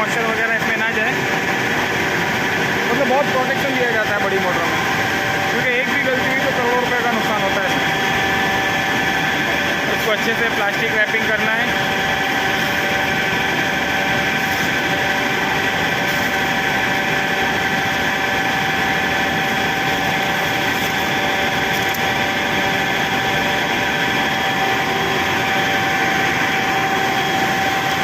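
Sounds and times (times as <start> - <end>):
industrial machinery drone: 0.0 - 28.0.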